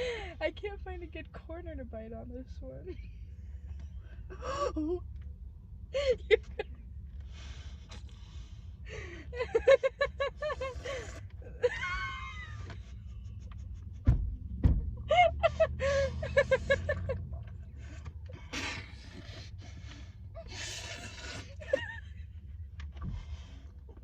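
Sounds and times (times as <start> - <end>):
low hum inside car: 0.0 - 24.0
dull thumps: 14.0 - 15.0.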